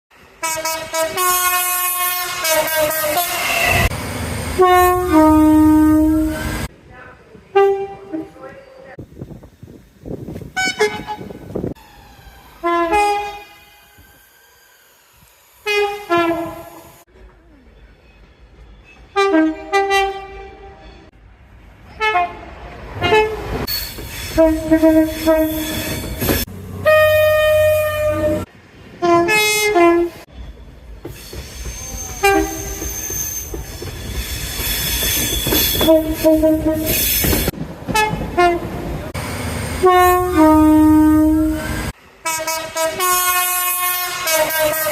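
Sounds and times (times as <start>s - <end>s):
moving train rumble: 0.1s - 44.9s
train horn blasts: 0.4s - 3.9s, 4.6s - 6.7s, 7.5s - 9.0s, 10.5s - 11.5s, 12.6s - 13.9s, 15.6s - 17.0s, 19.2s - 20.8s, 22.0s - 23.6s, 24.3s - 30.3s, 32.2s - 33.0s, 35.4s - 37.2s, 37.9s - 38.8s, 39.8s - 44.9s.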